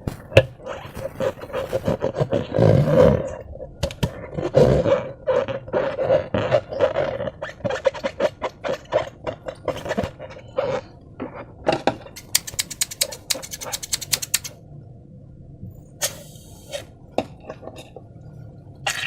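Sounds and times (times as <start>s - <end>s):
sharp crackling clicks: 12.2s - 14.6s.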